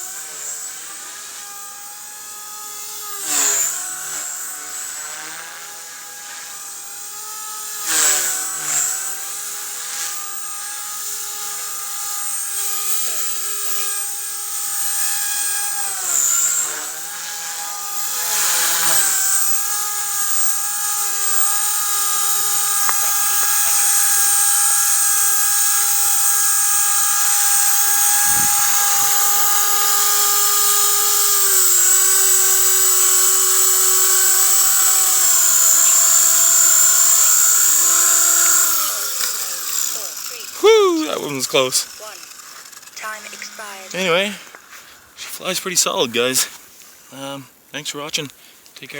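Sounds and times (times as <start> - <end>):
toy helicopter high whine: 0.0 - 45.1.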